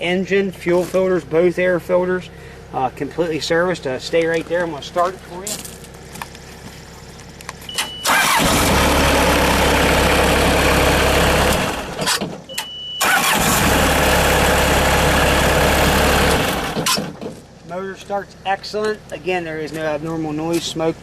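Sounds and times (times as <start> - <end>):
diesel engine running loudly: 0.0 - 12.1, 13.0 - 17.0
short high beep: 7.7 - 8.1.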